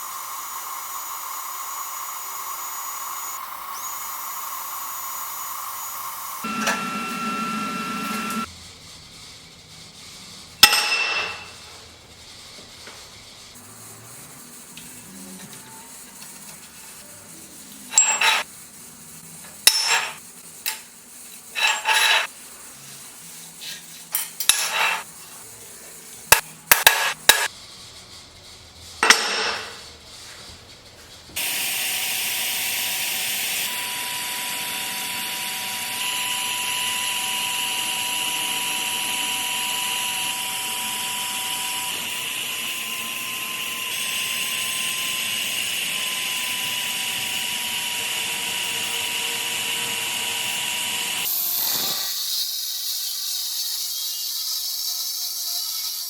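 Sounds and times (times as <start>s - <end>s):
power tool whining: 0.0s - 8.5s, 31.4s - 53.9s
scraping on steel parts: 8.2s - 31.4s.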